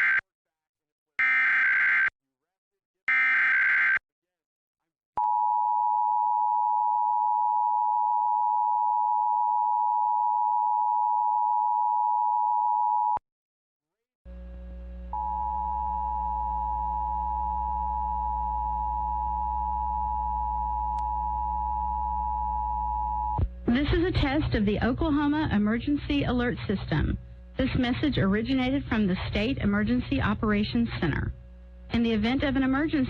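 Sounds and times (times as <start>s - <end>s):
low steady hum: 14.3s - 33.0s.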